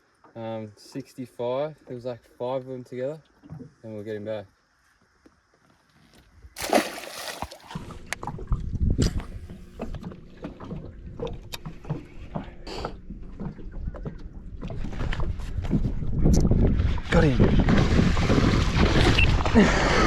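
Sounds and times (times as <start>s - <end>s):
water sloshing against boat: 6.5s - 16.3s
water splash: 6.6s - 8.0s.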